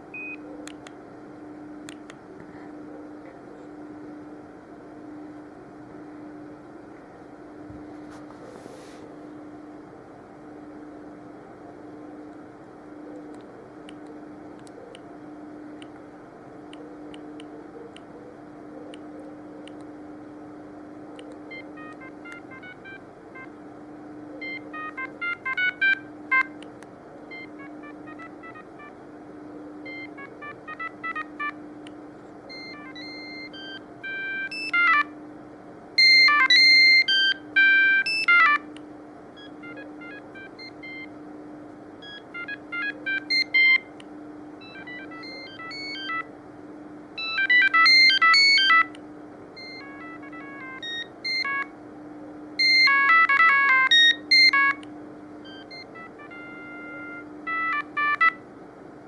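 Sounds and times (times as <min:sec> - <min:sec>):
phone ringtone melodies: 0:21.5 - 0:23.5, 0:24.4 - 0:26.6, 0:27.3 - 0:29.0, 0:29.9 - 0:31.6, 0:32.5 - 0:35.2, 0:36.0 - 0:38.7, 0:39.4 - 0:41.1, 0:42.0 - 0:43.9, 0:44.6 - 0:46.3, 0:47.2 - 0:48.9, 0:49.6 - 0:51.7, 0:52.6 - 0:54.8, 0:55.4 - 0:58.4.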